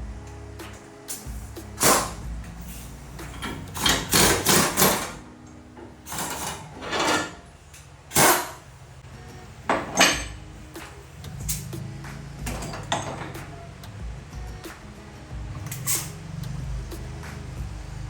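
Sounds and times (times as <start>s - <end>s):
hammer on sheet metal: 1.8s - 2.3s, 3.8s - 5.2s, 8.1s - 8.6s.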